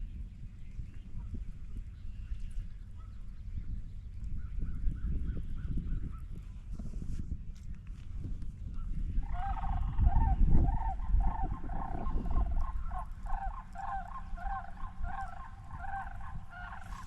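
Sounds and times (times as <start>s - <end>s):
large bird calling: 9.1s - 17.0s.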